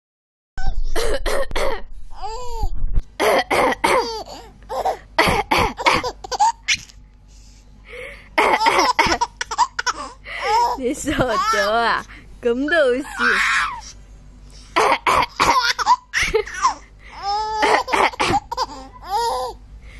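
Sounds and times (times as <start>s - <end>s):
person coughing: 0.9s - 1.9s, 3.2s - 4.2s, 5.2s - 6.2s, 8.4s - 10.0s, 14.8s - 16.8s, 17.5s - 18.9s
baby laughing: 3.8s - 5.1s, 5.7s - 7.0s, 8.4s - 11.8s, 14.8s - 19.6s.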